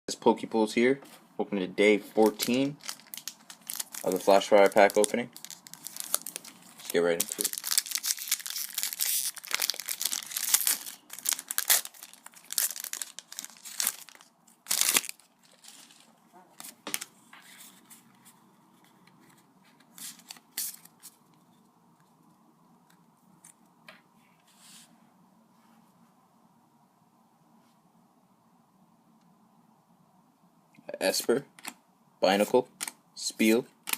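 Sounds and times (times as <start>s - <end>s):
foil wrapper tearing and crinkling: 2.2s - 17.1s
cards rustling and clicking: 2.2s - 17.9s, 32.8s - 33.0s.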